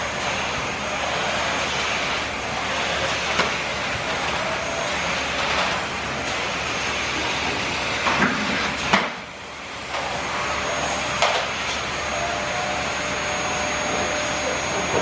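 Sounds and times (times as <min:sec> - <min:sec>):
vacuum cleaner running: 0:00.0 - 0:15.0
vacuum cleaner knocking: 0:13.8 - 0:15.0.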